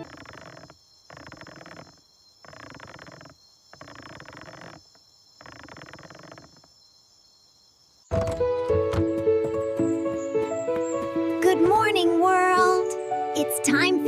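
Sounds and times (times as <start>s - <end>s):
crickets chirping: 0.0s - 11.2s
high insect hum: 0.0s - 11.4s.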